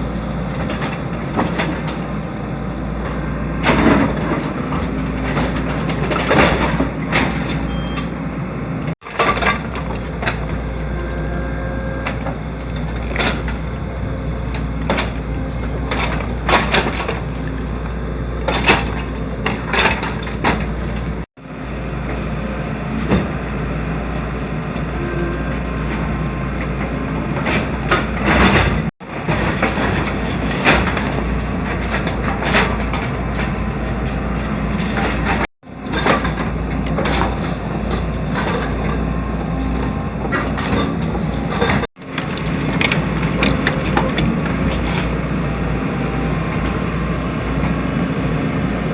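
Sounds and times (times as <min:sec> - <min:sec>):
excavator engine running: 0:00.0 - 0:48.9
concrete breaking knocks and cracks: 0:27.5 - 0:38.7.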